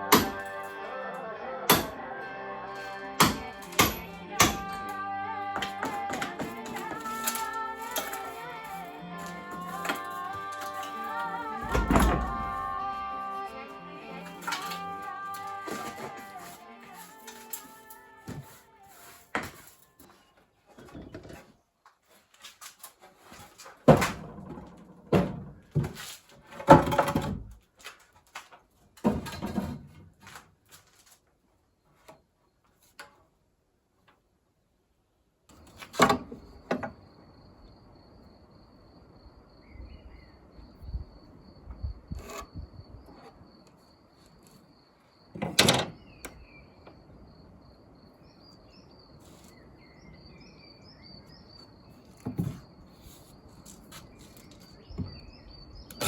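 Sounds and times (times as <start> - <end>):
wooden boards knocking and thudding: 5.6 - 7.4, 11.5 - 12.8, 23.7 - 27.6, 29.0 - 30.3, 52.2 - 52.7.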